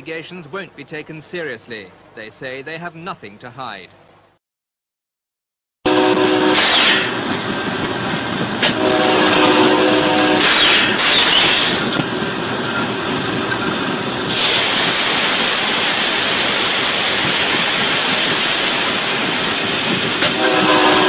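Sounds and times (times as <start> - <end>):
multi-tone train horn: 5.8 - 7.1, 8.6 - 10.6, 20.2 - 21.0
train rushing past: 5.9 - 21.0.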